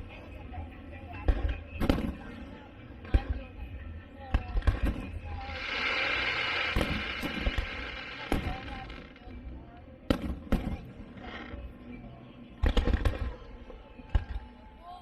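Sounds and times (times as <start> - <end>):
crackling hiss of firework shells: 5.3 - 9.5
firework booms: 5.6 - 9.0.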